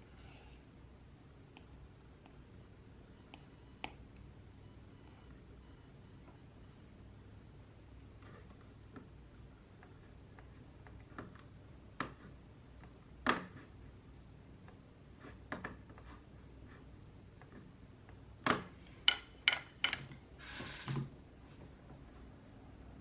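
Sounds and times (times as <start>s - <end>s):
small objects clicking on desk: 18.5s - 20.1s.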